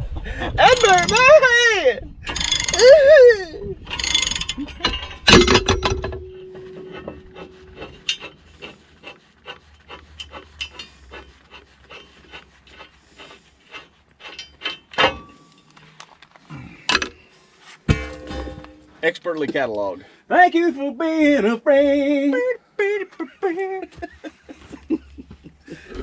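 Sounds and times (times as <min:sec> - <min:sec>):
loud metal clank: 0:00.6 - 0:01.4, 0:03.9 - 0:08.3, 0:17.9 - 0:19.0
ratchet wrench clicking: 0:00.6 - 0:01.4, 0:02.3 - 0:03.0, 0:03.9 - 0:04.7.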